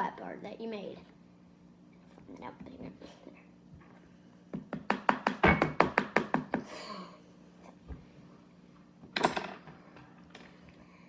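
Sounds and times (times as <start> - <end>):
sharp knocks on hard surface: 4.6 - 6.6.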